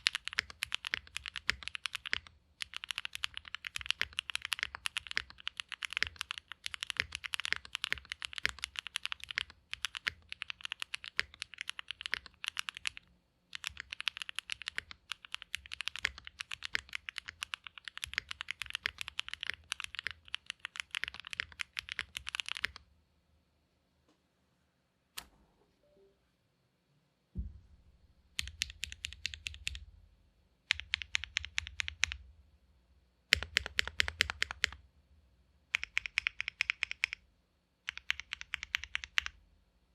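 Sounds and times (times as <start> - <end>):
mechanical keyboard typing: 0.0 - 22.8, 28.4 - 29.8, 30.7 - 32.2, 33.3 - 34.8, 35.7 - 37.2, 37.9 - 39.4.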